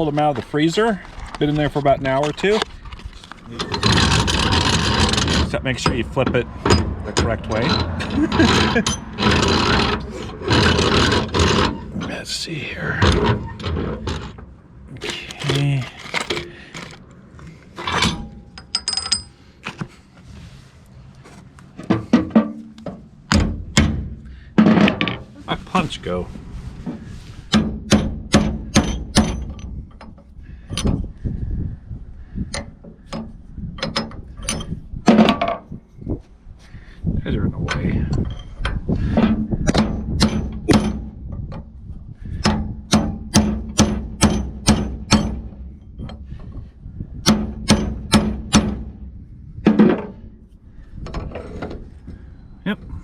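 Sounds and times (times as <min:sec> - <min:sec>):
metal tools clattering: 0:06.7 - 0:11.8, 0:15.0 - 0:17.0, 0:17.8 - 0:19.4
hammer striking metal punch: 0:27.5 - 0:29.5, 0:42.4 - 0:45.5, 0:47.2 - 0:48.9.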